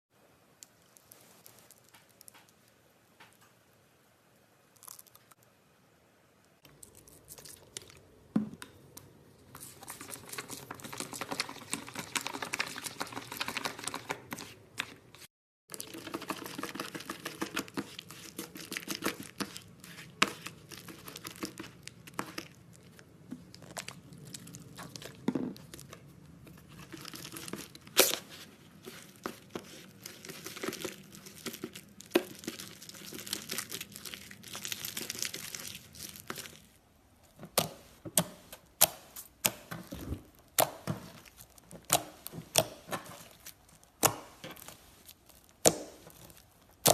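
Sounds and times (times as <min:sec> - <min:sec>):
slime crackling and popping: 0:20.3 - 0:36.8, 0:37.5 - 0:46.9.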